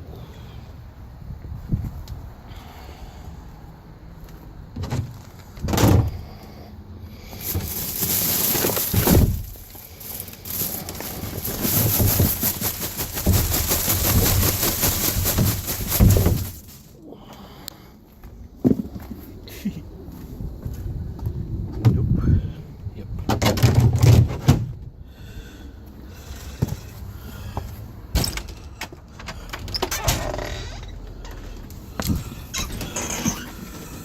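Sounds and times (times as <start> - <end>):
knocks and thuds: 7.4 - 9.7, 10.6 - 16.8
rattling and scraping with clicks: 7.4 - 17.0, 28.1 - 34.0.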